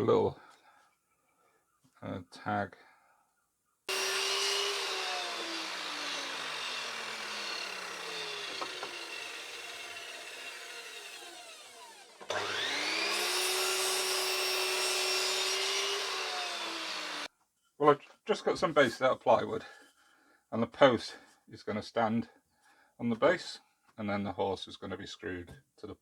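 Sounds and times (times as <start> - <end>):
scroll saw running: 3.9 - 17.3.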